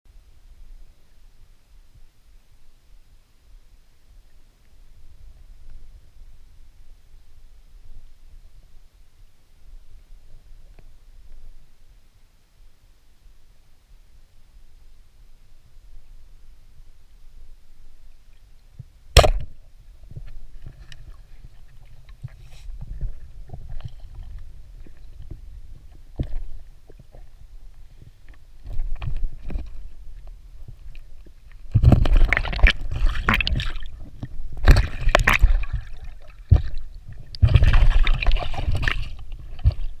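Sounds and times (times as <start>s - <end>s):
churning and gurgling water: 18.0s - 40.0s.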